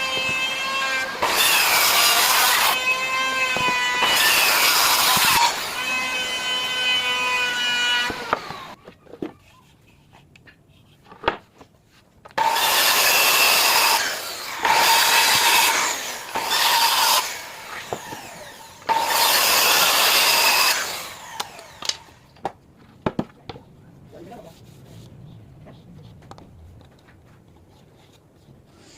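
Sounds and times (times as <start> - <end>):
power tool cutting wood: 0.0 - 8.8, 12.4 - 22.2.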